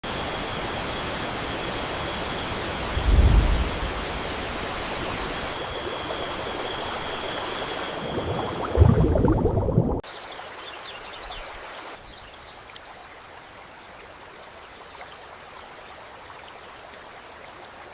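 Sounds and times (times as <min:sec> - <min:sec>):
steady rushing noise: 0:00.2 - 0:10.0.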